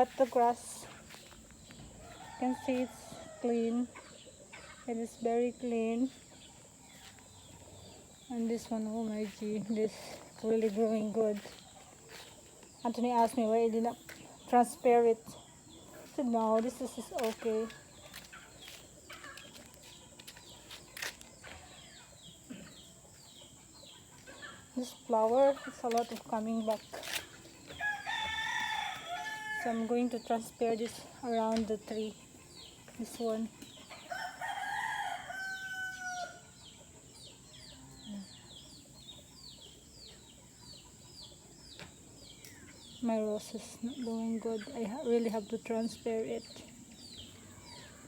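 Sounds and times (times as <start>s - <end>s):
birds chirping: 0.0s - 48.0s
rooster crowing: 27.8s - 29.9s, 34.1s - 36.6s.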